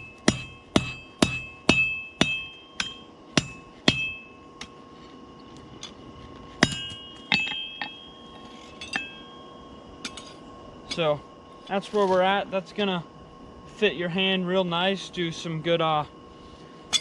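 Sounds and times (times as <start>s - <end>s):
hammer striking hot steel on anvil: 0.0s - 4.8s, 6.6s - 11.1s
light metal clinks: 6.6s - 11.1s.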